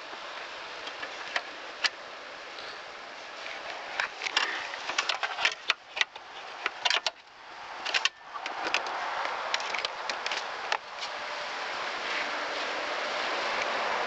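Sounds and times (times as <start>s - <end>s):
steady background hiss: 0.0s - 14.0s
cable fittings clicking and rattling: 3.6s - 11.2s.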